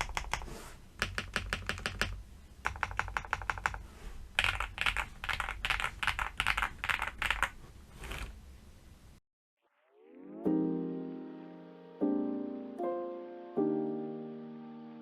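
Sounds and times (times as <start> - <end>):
typing on mechanical keyboard: 0.0 - 3.8, 4.4 - 8.3.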